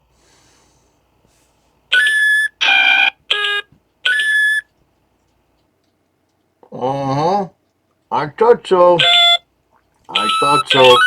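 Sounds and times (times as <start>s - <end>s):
electronic tones: 9.0s - 9.4s, 10.1s - 11.0s.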